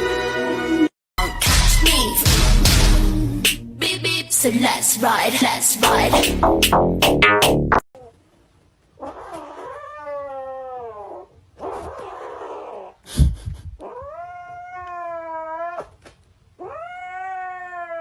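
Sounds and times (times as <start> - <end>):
cat yowling: 9.0 - 13.0, 13.8 - 16.0, 16.6 - 18.0.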